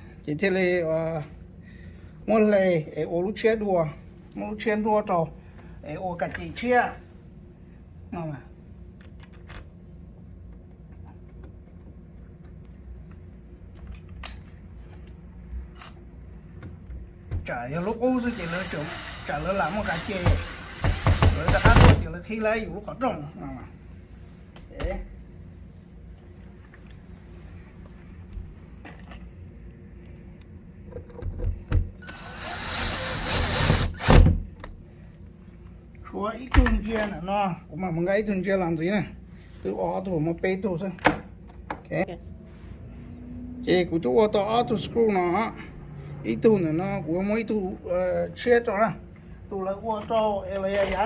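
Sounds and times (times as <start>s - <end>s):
steady low hum: 0.0s - 51.0s
small electric motor whirring: 18.1s - 21.8s, 32.0s - 34.2s.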